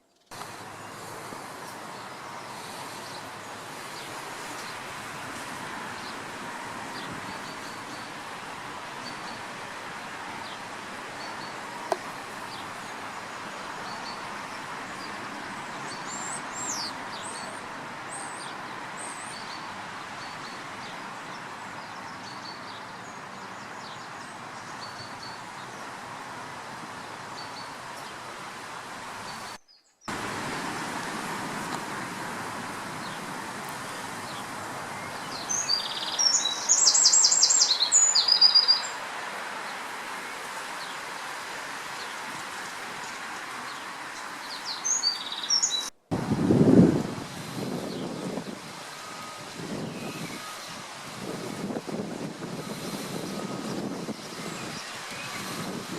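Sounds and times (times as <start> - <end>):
songbird rapid high trills: 32.4 - 39.1, 47.2 - 55.9
bird chirps: 34.3 - 39.0, 44.5 - 45.9.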